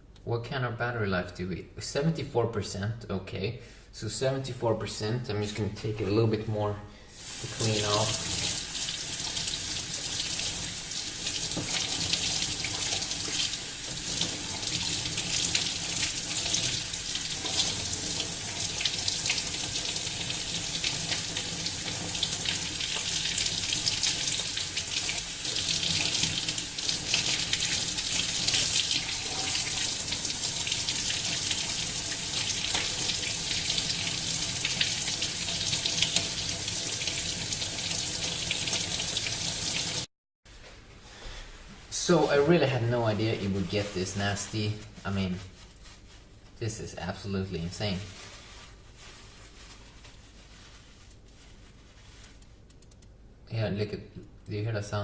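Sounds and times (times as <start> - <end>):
tap water running into sink: 7.2 - 40.1.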